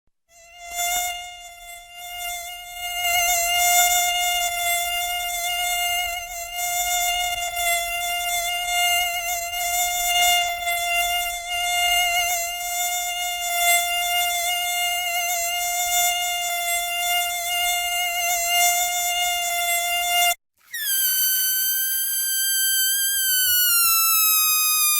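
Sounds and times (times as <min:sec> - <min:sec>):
high-pitched buzzing whine: 0:20.8 - 0:24.9.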